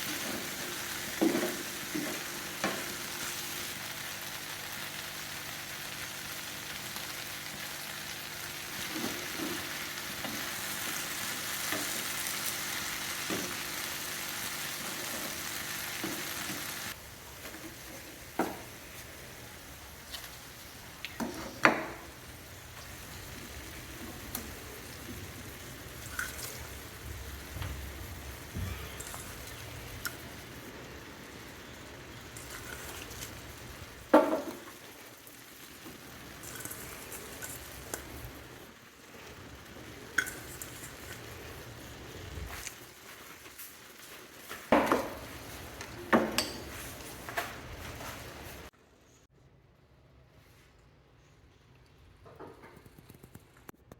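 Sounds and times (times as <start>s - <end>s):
okra sizzling in oil: 0.0s - 48.8s.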